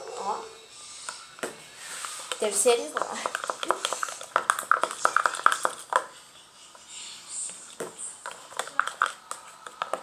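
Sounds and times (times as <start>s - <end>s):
slime clicking and popping: 3.1s - 6.1s.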